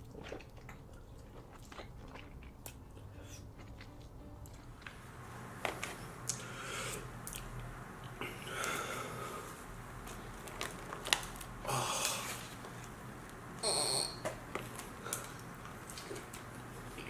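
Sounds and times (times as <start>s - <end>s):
chewing with wet mouth clicks: 0.0s - 4.7s.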